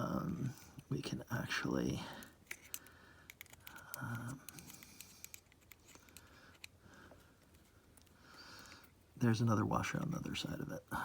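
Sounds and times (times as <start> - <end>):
steel picks clicking and scratching: 2.4 - 6.7.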